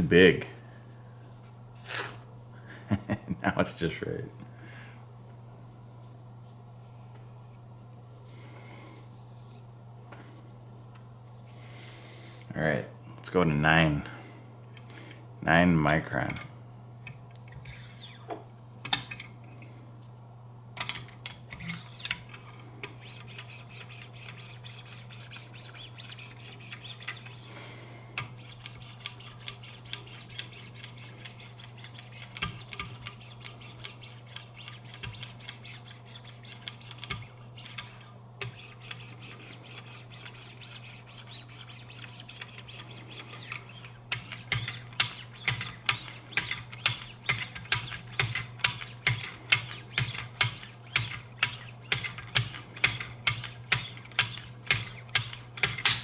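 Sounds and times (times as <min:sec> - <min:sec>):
steady low hum: 0:00.0 - 0:56.0
blade sharpening strokes: 0:22.9 - 0:27.6, 0:28.2 - 0:56.0.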